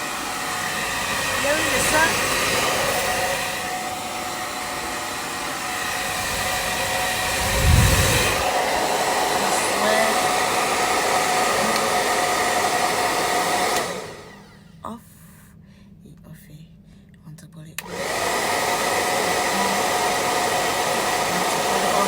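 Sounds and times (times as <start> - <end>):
blow dryer running: 0.0 - 14.7, 17.8 - 22.0
low rumble: 6.3 - 8.8.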